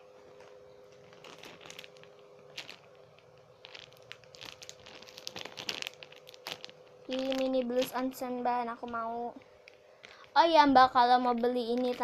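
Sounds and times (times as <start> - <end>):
plastic wrappers crinkling: 0.0 - 12.0.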